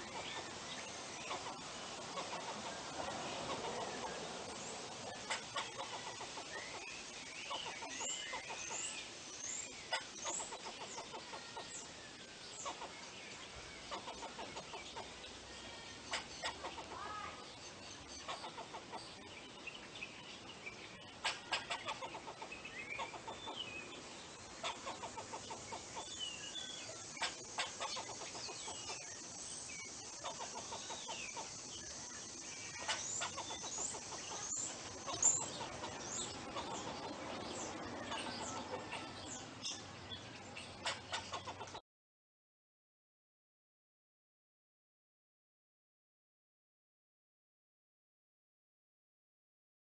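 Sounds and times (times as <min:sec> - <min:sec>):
squirrel chattering: 0:27.2 - 0:29.0, 0:30.2 - 0:31.5, 0:32.8 - 0:37.2.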